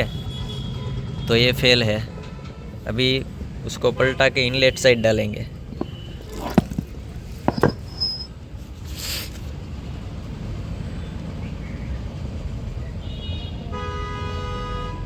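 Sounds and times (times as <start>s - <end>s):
low workshop rumble: 5.5s - 8.8s
sharp knocks of engine parts: 5.7s - 8.0s.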